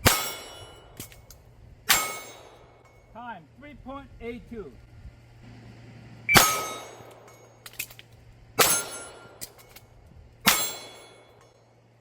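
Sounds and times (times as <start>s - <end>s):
steel target ringing: 0.0s - 1.3s, 1.9s - 3.2s, 6.3s - 8.0s, 8.6s - 11.7s
pistol shots: 6.3s - 7.9s.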